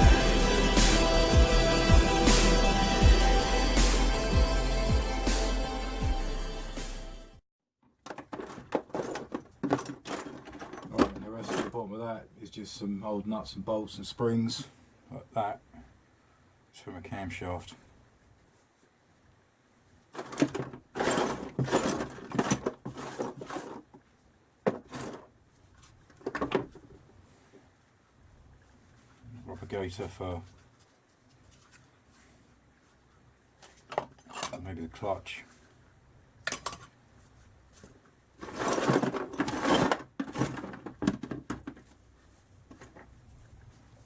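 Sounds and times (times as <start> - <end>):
metal parts clattering: 20.2 - 23.8, 38.4 - 41.0.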